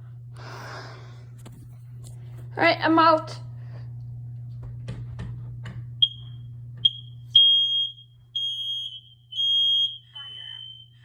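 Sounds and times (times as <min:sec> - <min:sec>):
loud high alarm beeps: 0:06.0 - 0:11.0.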